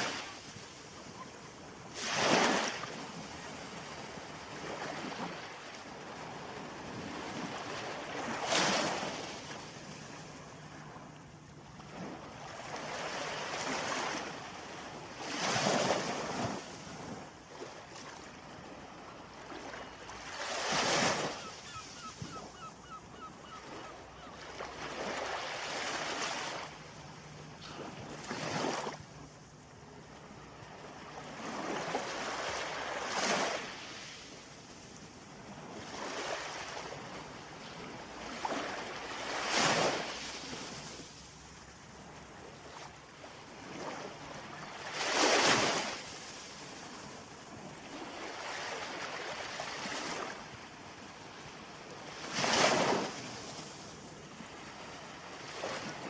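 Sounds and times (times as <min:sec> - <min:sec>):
ocean waves crashing on shore: 0:00.0 - 0:11.1, 0:23.6 - 0:34.1.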